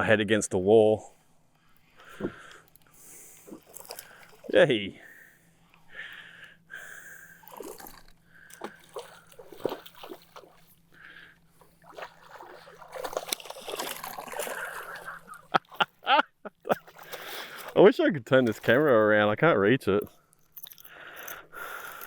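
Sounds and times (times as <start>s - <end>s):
water splashing and sloshing: 1.8s - 4.8s, 7.3s - 19.2s.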